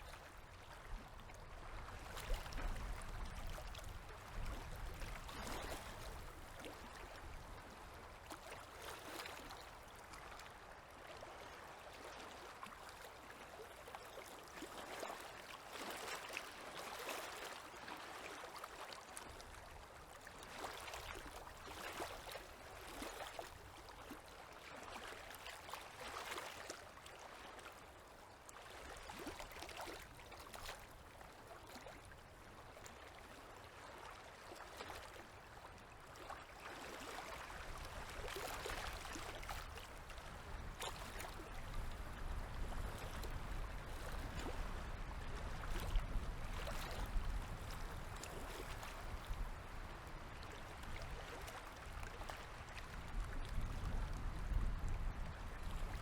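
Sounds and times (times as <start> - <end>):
waves lapping at shore: 0.0 - 56.0.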